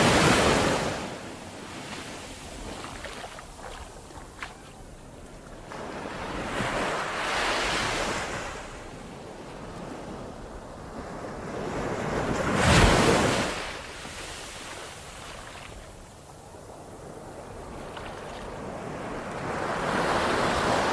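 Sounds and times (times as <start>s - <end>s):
ocean waves crashing: 0.0s - 16.0s, 17.1s - 20.9s
soft wash of water: 0.0s - 20.9s.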